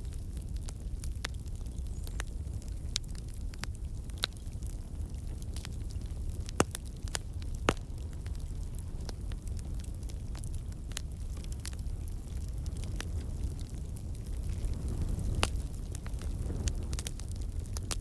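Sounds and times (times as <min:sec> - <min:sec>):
campfire low rumble: 0:00.0 - 0:18.0
wood crackling and popping: 0:00.0 - 0:18.0.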